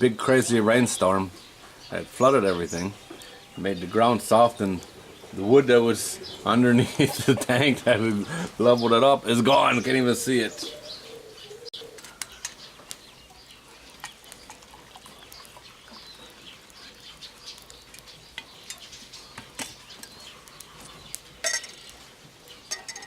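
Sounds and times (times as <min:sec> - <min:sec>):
faint bird calls: 0:09.8 - 0:14.3.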